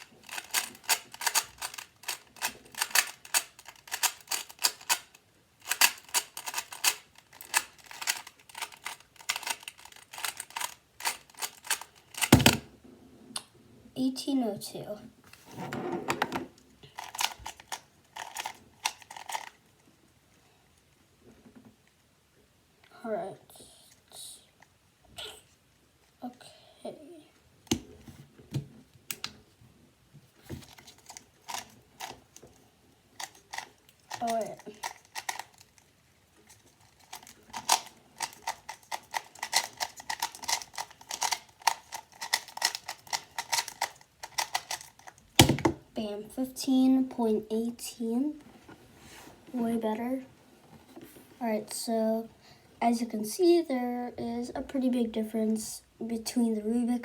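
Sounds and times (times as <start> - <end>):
puzzle cube layers clicking: 0.0 - 12.6, 37.1 - 45.1.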